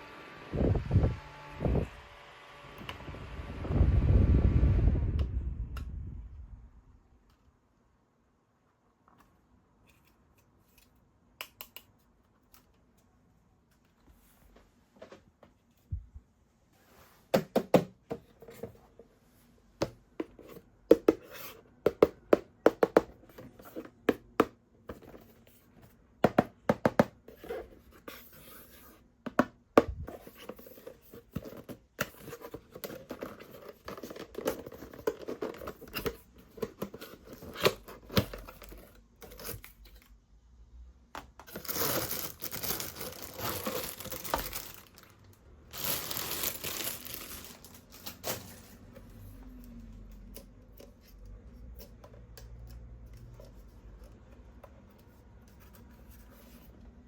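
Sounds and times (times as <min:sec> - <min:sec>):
packaging crinkling and tearing: 0:41.4 - 0:48.8.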